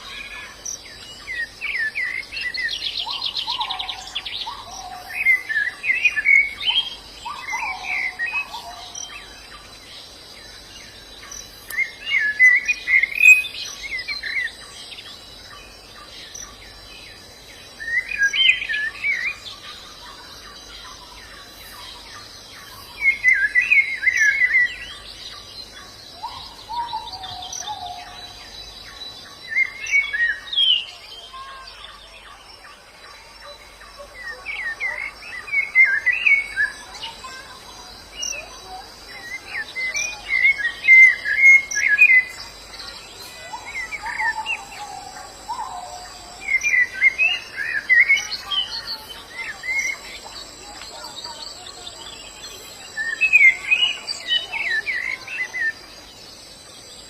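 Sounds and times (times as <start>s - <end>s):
birds twittering: 0.0s - 57.0s
low whistled bird notes: 11.7s - 14.4s.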